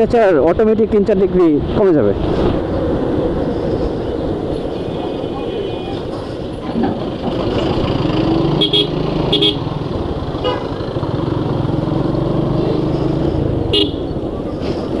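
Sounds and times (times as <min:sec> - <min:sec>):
motorcycle engine running: 0:07.4 - 0:14.2.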